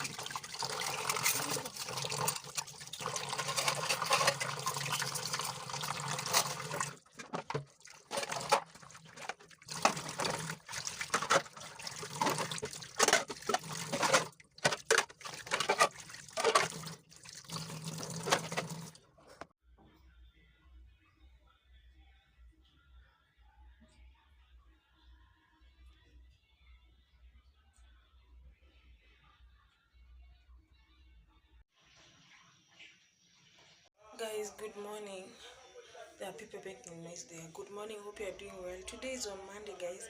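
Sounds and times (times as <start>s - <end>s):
running water splashing: 0.0s - 19.0s.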